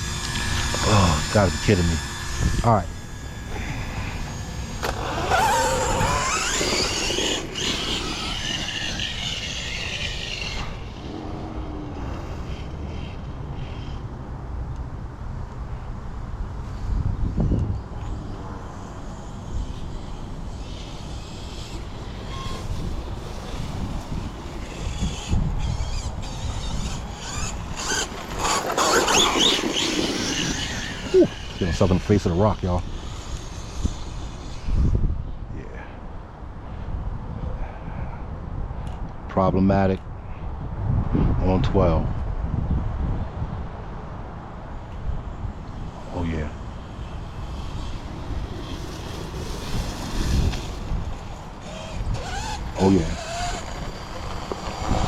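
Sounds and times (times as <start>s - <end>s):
electric motor whining: 0.0s - 12.6s, 18.6s - 35.0s, 45.2s - 55.0s.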